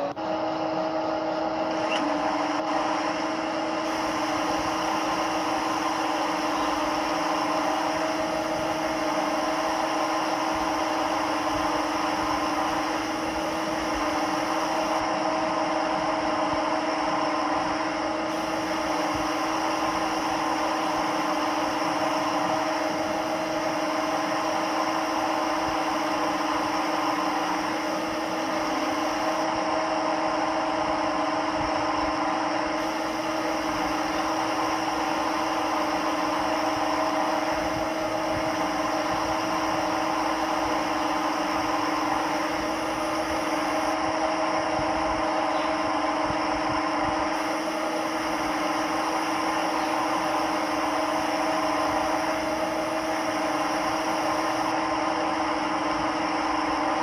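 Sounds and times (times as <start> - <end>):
lathe humming with hiss: 0.0 - 57.0.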